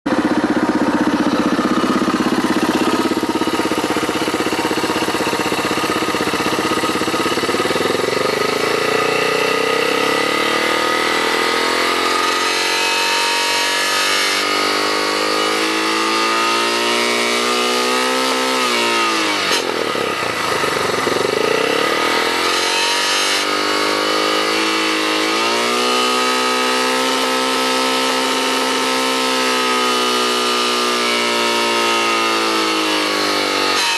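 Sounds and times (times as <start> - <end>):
motorcycle engine revving: 0.0 - 33.9
engine rattle: 0.1 - 13.0, 17.3 - 25.3.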